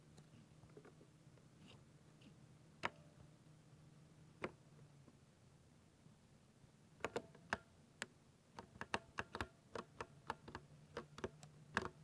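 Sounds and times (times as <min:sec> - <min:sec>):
mechanical keyboard typing: 0:08.6 - 0:12.0.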